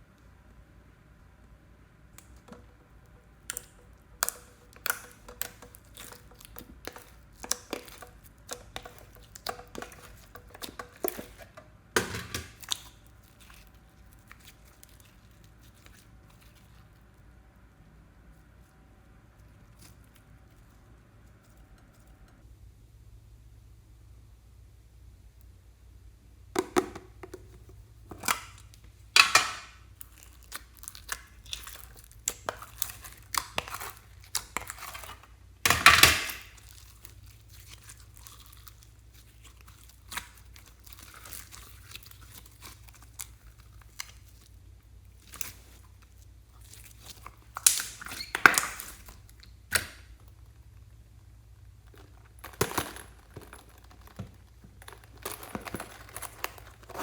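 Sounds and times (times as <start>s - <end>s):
hands handling slime: 2.1s - 17.2s, 26.6s - 50.8s.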